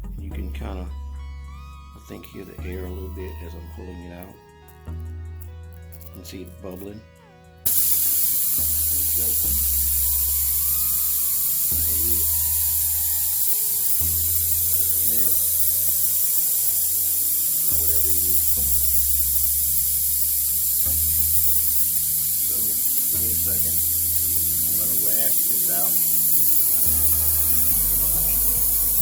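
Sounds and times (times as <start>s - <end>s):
air hissing from tire: 7.7s - 29.0s
low hum: 7.7s - 29.0s.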